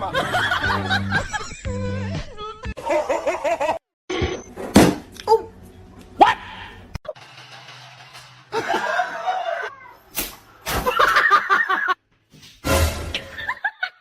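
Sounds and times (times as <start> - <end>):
music: 0.1 - 2.9, 12.6 - 13.5
person laughing: 8.5 - 9.7.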